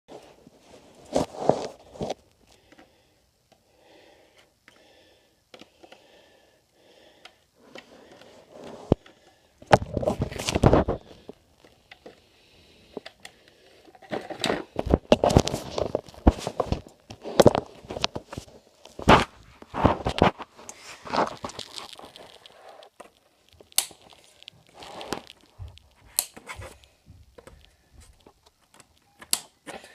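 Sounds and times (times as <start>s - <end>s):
packaging rustling and crinkling: 9.7s - 11.8s, 13.8s - 29.0s.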